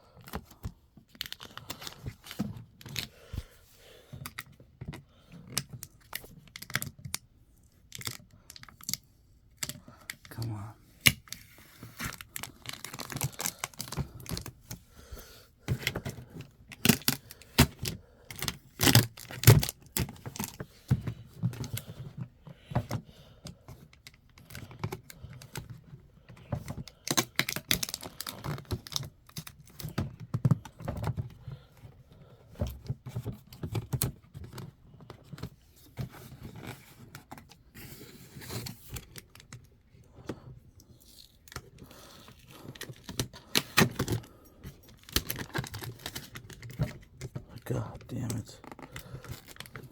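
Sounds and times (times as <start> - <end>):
packaging clicks and rattles: 0.2 - 3.2, 4.2 - 10.4, 11.0 - 14.8, 15.6 - 31.5, 38.3 - 47.6, 48.2 - 49.9
packaging tearing: 11.9 - 14.4, 16.7 - 20.6.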